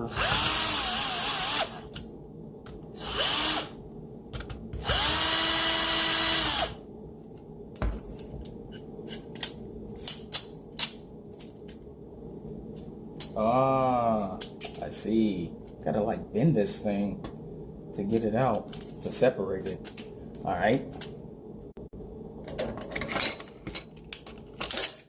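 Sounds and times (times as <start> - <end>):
power drill whining: 0.0 - 1.9, 3.0 - 3.8, 4.8 - 6.8
clicks and knocks of parts handled: 4.3 - 4.8, 7.2 - 11.9, 14.4 - 14.9, 18.1 - 19.0, 19.6 - 21.2, 22.5 - 25.0.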